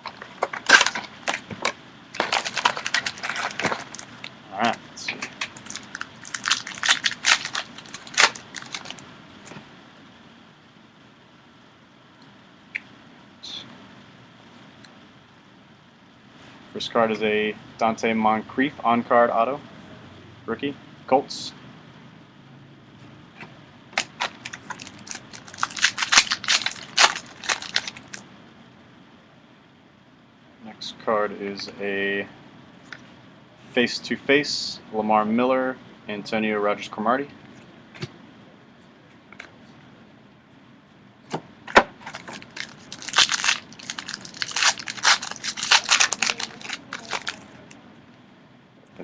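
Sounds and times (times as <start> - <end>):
plastic packaging crinkling: 0.0 - 4.3, 5.2 - 9.0, 24.0 - 28.2, 42.0 - 47.7.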